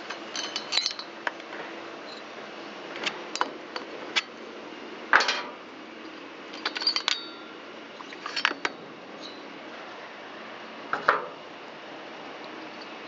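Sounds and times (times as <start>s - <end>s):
metal engine parts clinking: 0.0s - 1.4s, 6.5s - 9.4s.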